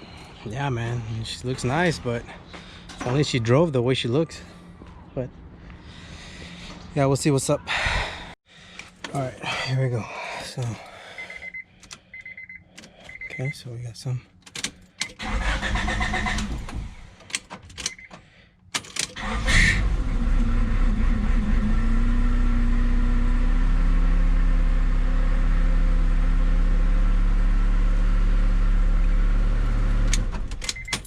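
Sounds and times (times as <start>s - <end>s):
car engine starting and idling: 14.3s - 31.0s.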